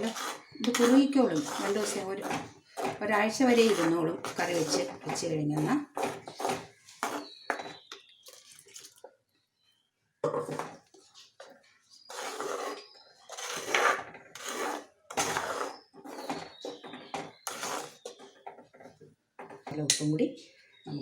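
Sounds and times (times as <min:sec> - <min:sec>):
spoon scraping and clinking pot: 0:00.0 - 0:09.0, 0:12.0 - 0:18.2.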